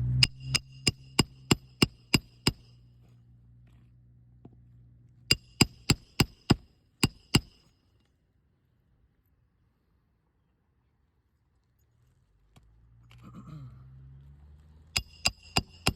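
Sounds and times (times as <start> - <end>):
hammer striking metal: 0.0 - 2.8, 5.3 - 7.7, 15.0 - 15.9.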